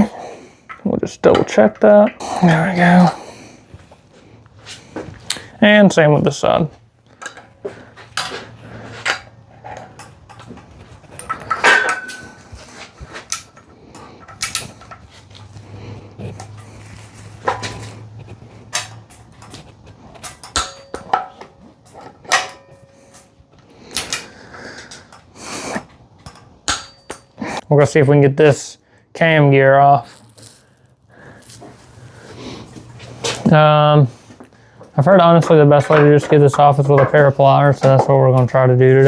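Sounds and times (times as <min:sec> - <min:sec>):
hand tools clicking on metal: 0:13.3 - 0:15.1.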